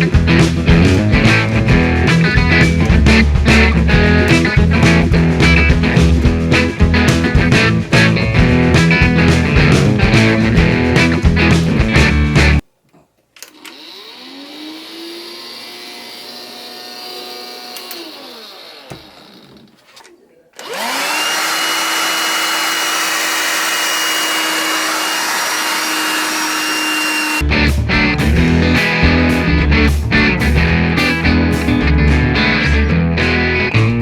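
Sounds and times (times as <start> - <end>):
music: 0.0 - 12.6, 27.4 - 34.0
handheld vacuum cleaner whine: 13.4 - 19.8, 20.6 - 27.4.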